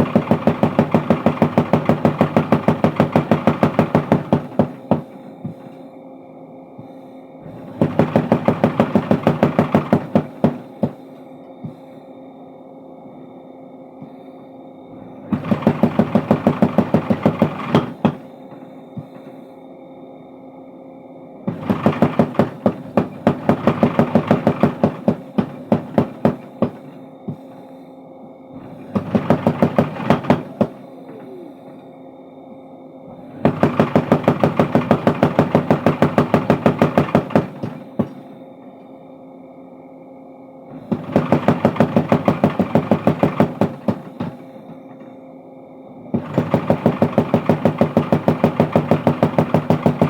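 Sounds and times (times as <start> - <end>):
power hammer blows on steel: 0.0 - 5.8, 7.5 - 11.8, 21.5 - 27.7, 28.6 - 31.8, 33.4 - 38.4, 40.8 - 44.9
machine motor humming: 0.0 - 6.1, 6.8 - 12.0, 13.9 - 19.7, 21.3 - 50.0.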